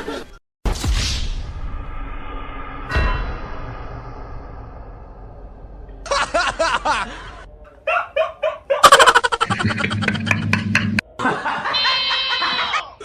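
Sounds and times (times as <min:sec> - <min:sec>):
comedic laughing and snickering: 0:08.8 - 0:13.0
background music: 0:09.5 - 0:11.1.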